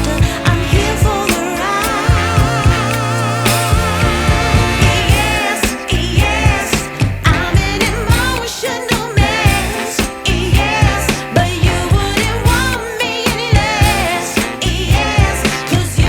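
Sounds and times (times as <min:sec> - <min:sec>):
pop song with vibrato vocals: 0:00.0 - 0:16.0.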